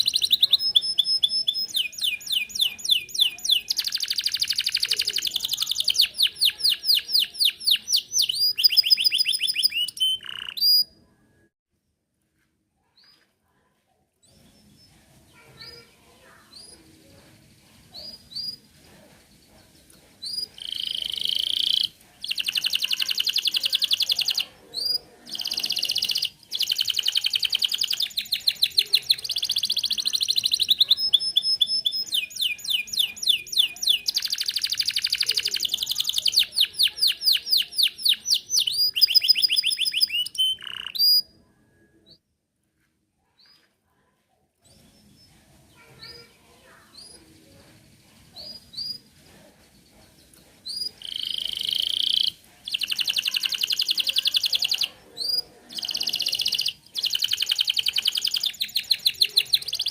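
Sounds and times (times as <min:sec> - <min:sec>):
canary singing trills: 0:00.0 - 0:11.1, 0:17.9 - 0:42.2, 0:50.1 - 0:59.9.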